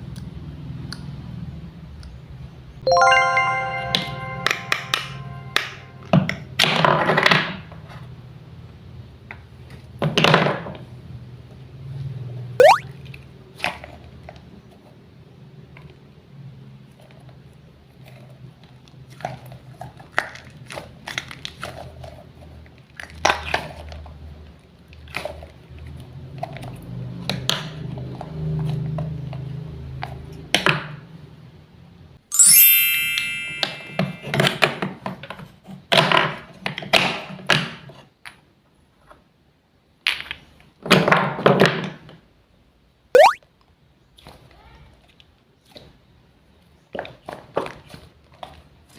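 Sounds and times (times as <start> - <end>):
bright ringing ding: 2.9 - 6.2, 32.3 - 34.6.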